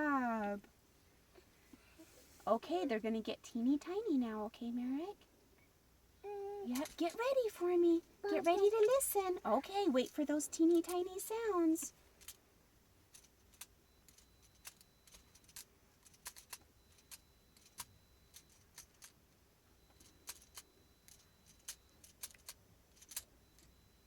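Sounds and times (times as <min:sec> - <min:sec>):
faint clicks and rattles: 0:13.1 - 0:19.2, 0:19.8 - 0:23.8
faint high-pitched tone: 0:23.4 - 0:24.0.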